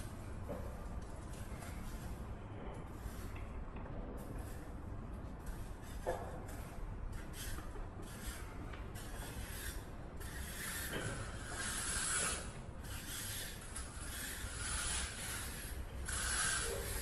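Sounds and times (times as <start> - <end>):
scraping strokes: 4.2 - 17.0.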